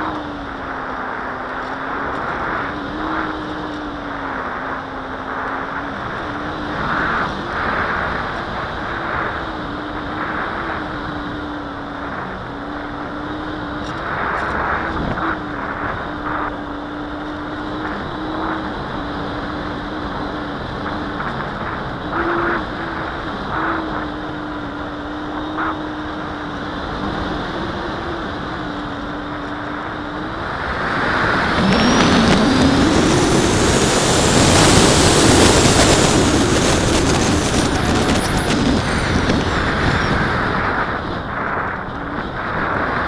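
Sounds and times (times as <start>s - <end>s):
electric motor and propeller whine: 0.0s - 43.0s
rushing air: 26.7s - 43.0s.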